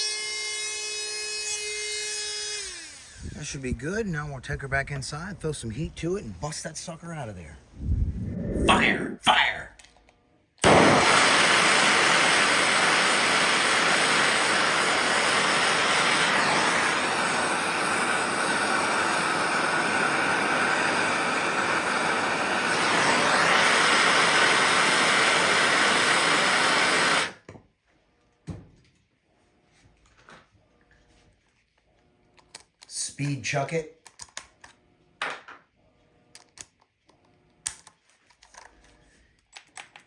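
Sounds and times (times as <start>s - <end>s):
gas torch hissing: 10.6s - 27.4s.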